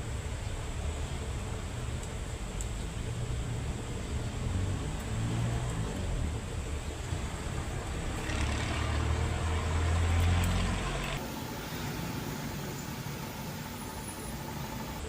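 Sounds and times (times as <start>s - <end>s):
diesel engine running: 5.7s - 15.0s.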